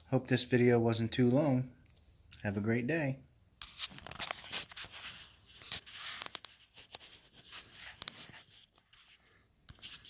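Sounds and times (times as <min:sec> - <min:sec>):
handling rustling and scraping: 0:03.6 - 0:10.0.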